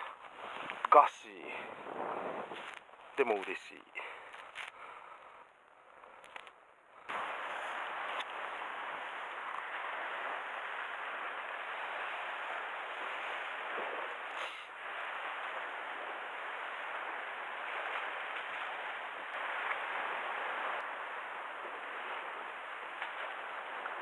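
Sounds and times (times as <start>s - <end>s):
outdoor background hiss: 0.0s - 24.0s
faint ticks: 6.0s - 6.6s.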